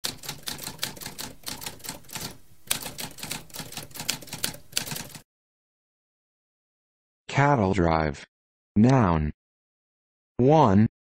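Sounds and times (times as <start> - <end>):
typewriter typing: 0.0 - 5.2.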